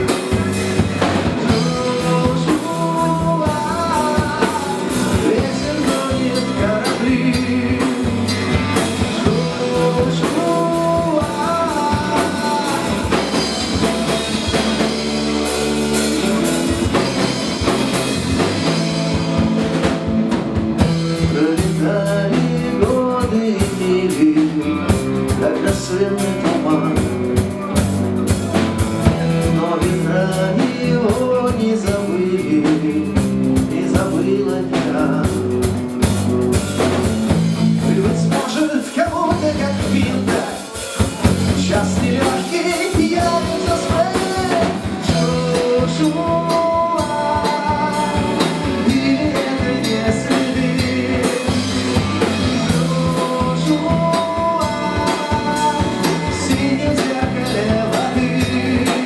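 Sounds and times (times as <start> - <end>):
drum kit: 0.0 - 59.0
rock guitar: 0.0 - 59.0.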